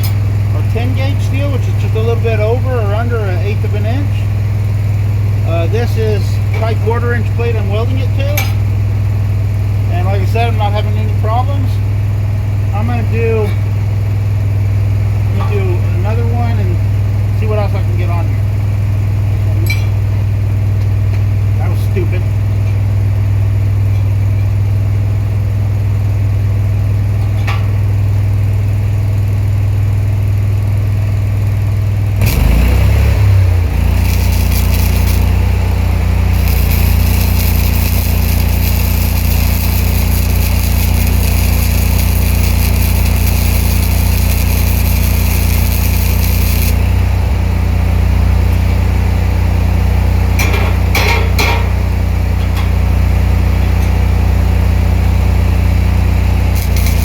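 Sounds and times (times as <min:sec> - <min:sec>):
welder generator engine running: 0:00.0 - 0:57.0
welding arc crackling and hissing: 0:32.2 - 0:47.6, 0:55.4 - 0:57.0.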